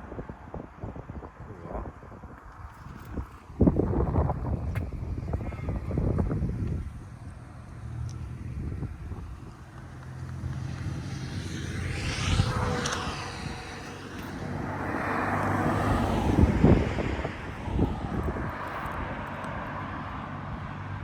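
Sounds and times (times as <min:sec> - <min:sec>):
passing whoosh: 0:10.4 - 0:19.2.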